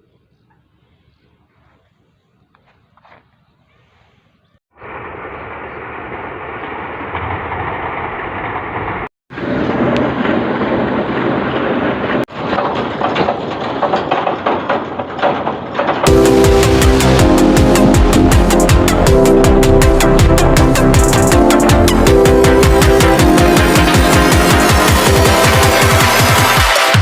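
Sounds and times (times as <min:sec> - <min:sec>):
drilling machine running: 0:09.4 - 0:27.0
electronic music with heavy beat: 0:16.1 - 0:27.0.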